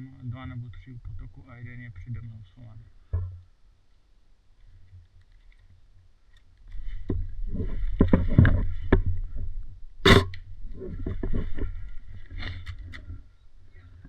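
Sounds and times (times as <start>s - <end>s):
microphone handling noise: 6.7s - 13.2s
sharp crack: 10.1s - 10.4s.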